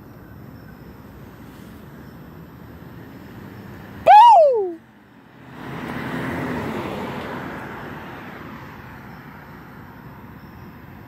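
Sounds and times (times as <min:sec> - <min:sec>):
car driving past: 0:05.4 - 0:08.4.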